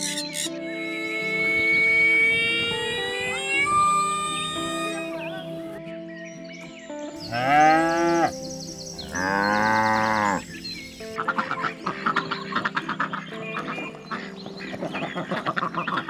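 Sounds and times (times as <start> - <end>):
drawn-out animal calls: 0.0 - 5.8, 7.2 - 16.0
rapid chattering animal calls: 0.0 - 5.8, 7.3 - 16.0
background music: 0.0 - 16.0.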